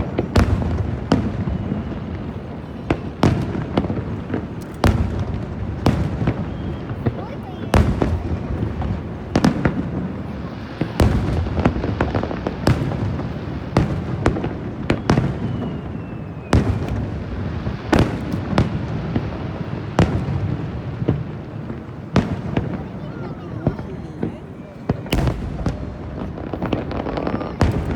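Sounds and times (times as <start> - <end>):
fireworks bangs: 0.0 - 27.9
faint falling whistle: 14.9 - 16.8.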